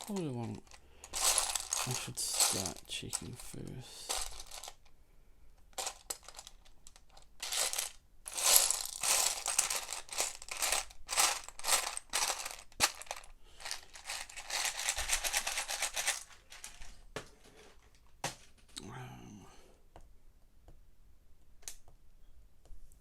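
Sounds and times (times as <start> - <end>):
plastic pieces clattering: 0.0 - 4.9, 5.7 - 18.8.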